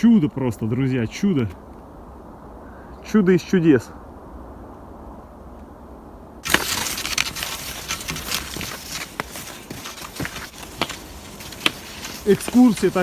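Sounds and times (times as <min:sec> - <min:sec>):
skis crunching on snow: 0:06.4 - 0:13.0.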